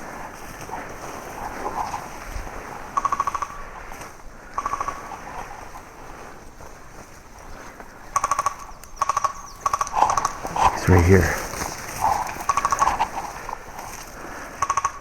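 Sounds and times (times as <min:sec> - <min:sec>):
steady rustling: 0:09.8 - 0:14.6.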